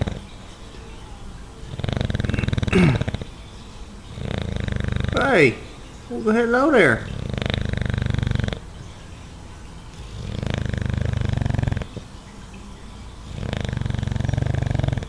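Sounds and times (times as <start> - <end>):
dog snoring: 0.0 - 0.4, 1.6 - 3.4, 4.0 - 5.6, 6.9 - 8.8, 9.9 - 12.1, 13.2 - 15.0.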